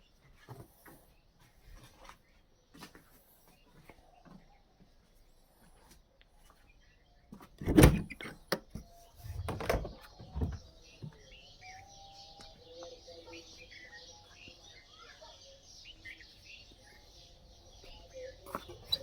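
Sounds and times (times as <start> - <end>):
faint bird chirps: 8.0 - 19.0.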